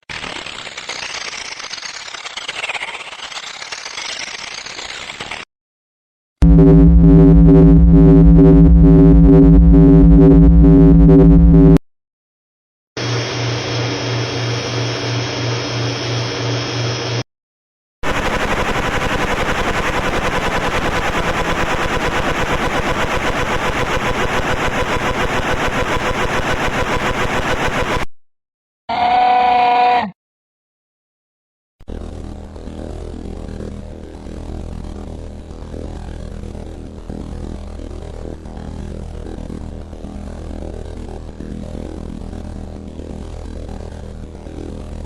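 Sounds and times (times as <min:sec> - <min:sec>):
engine running: 0:06.4 - 0:11.8, 0:13.0 - 0:17.2, 0:18.0 - 0:28.1.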